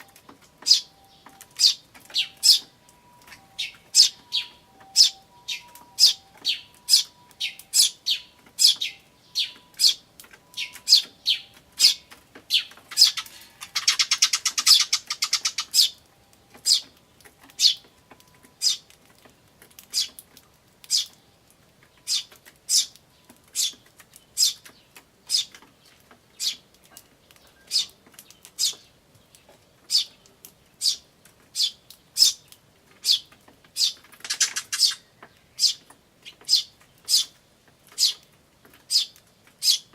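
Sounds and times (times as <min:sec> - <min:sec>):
sparrow chick chirping: 0:00.0 - 0:16.0, 0:16.6 - 0:18.9, 0:22.0 - 0:26.6, 0:27.3 - 0:29.0, 0:30.8 - 0:39.9
buzzy bird chatter: 0:03.6 - 0:16.0, 0:33.0 - 0:38.2.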